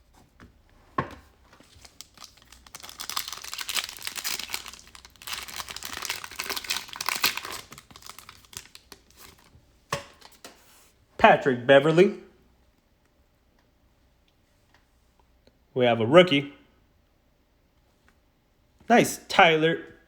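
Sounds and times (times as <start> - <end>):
plastic wrapper crinkling and tearing: 1.6 - 9.6.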